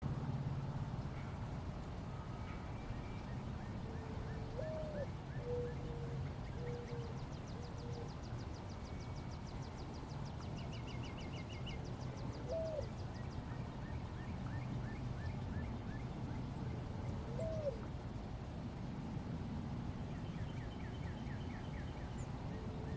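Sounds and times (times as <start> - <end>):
low swooping bird calls: 2.1 - 9.7, 10.6 - 17.9.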